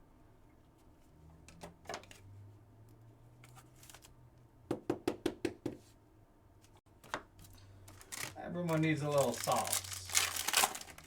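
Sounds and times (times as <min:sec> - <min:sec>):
cards rustling: 0:06.6 - 0:11.0.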